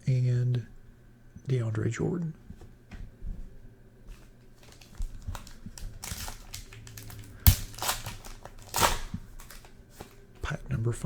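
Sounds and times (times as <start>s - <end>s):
cards being handled: 2.6s - 10.5s
foil wrapper crinkling: 4.1s - 10.5s.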